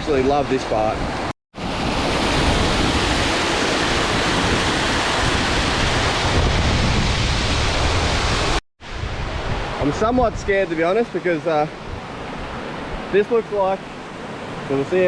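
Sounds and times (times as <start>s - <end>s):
waterfall rushing: 1.8s - 6.4s.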